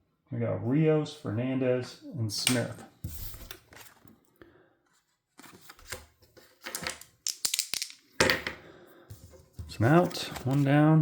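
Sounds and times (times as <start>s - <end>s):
dice clattering on a table: 6.6s - 8.6s
sharp dice clicks: 7.3s - 8.0s.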